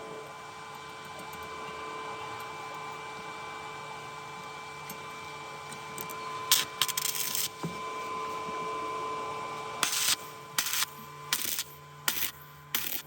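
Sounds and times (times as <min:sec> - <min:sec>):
steady electrical whine: 0:00.0 - 0:13.0
welding arc crackling: 0:06.5 - 0:07.6, 0:09.8 - 0:13.0.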